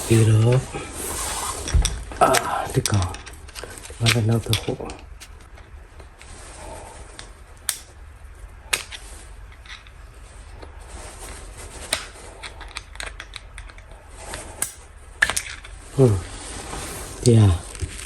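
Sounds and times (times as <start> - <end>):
small metal parts clicking: 11.9 - 13.9.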